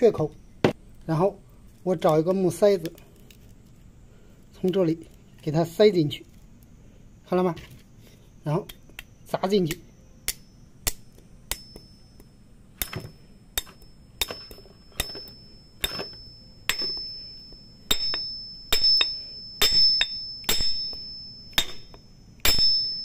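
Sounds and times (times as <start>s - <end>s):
high metallic ring: 9.8s - 23.0s
hammer striking wooden wedge: 12.8s - 17.1s, 17.9s - 22.9s.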